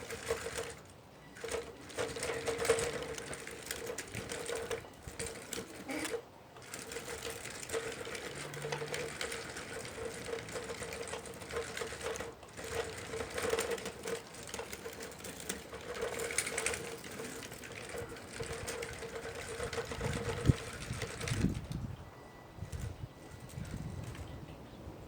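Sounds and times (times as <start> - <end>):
electric motor whine and clatter: 0.0 - 24.5.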